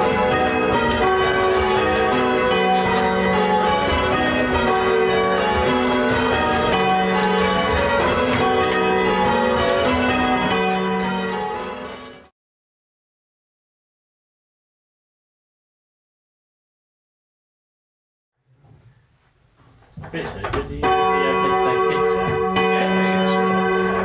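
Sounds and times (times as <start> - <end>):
church bells ringing: 0.0 - 12.3, 20.7 - 24.0.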